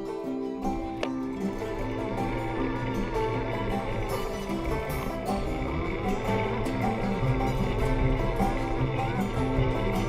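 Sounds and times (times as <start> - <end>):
plucked guitar music: 0.0 - 10.0
steady low bass: 1.5 - 10.0.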